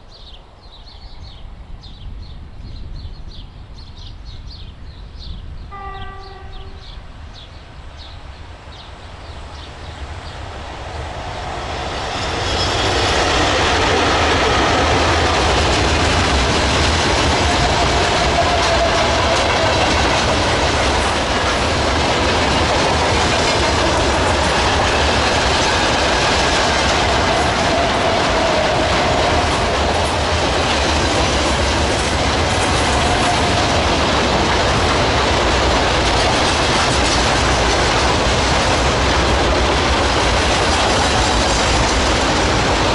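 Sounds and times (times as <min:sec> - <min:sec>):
freight train passing: 0:00.0 - 0:42.9
wagon wheels clattering on track: 0:12.8 - 0:42.9.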